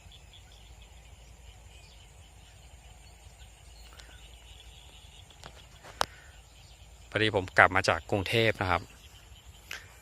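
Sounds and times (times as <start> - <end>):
insects chirping: 0.0 - 10.0
small tick: 5.3 - 6.2.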